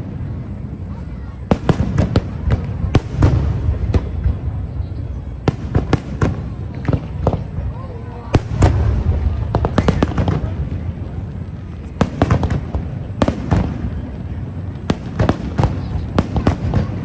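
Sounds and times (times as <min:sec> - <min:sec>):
fireworks bangs and crackles: 0:00.0 - 0:17.0
low rumble: 0:02.3 - 0:13.4.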